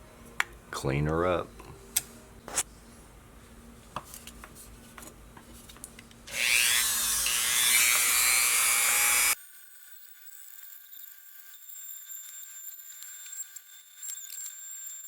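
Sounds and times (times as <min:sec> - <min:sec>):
rotary tool grinding: 0:06.3 - 0:15.0.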